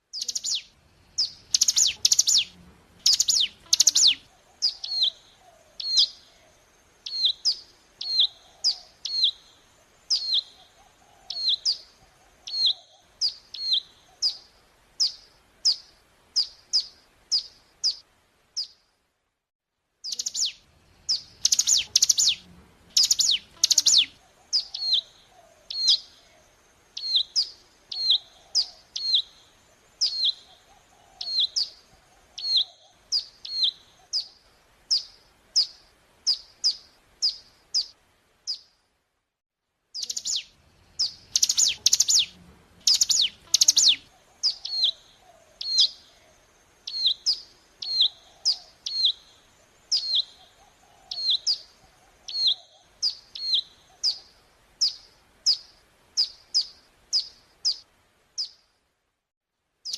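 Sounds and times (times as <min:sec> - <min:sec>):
bird calls: 0:00.0 - 0:18.0, 0:20.0 - 0:38.7, 0:40.0 - 0:58.6.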